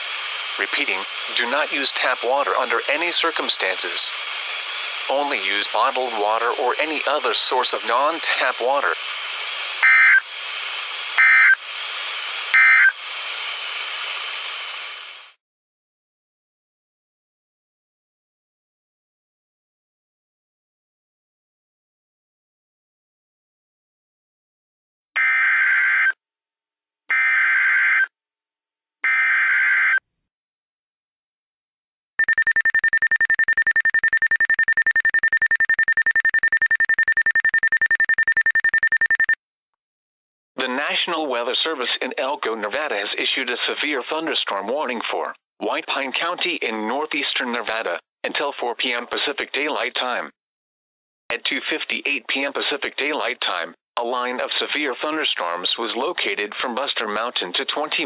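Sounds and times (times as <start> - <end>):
radio broadcast hiss: 0.0 - 15.4, 40.6 - 50.3
warbling data tones: 9.7 - 13.4, 32.2 - 39.4.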